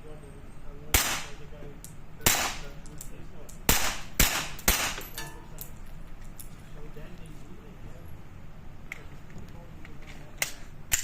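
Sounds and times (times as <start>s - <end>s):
pistol shots: 0.9s - 1.4s, 2.2s - 2.7s, 3.7s - 5.1s.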